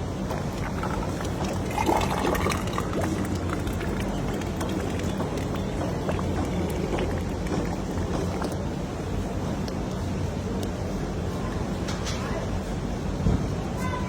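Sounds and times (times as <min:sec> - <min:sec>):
liquid sounds: 0:00.0 - 0:10.1
low mechanical hum: 0:00.0 - 0:14.0.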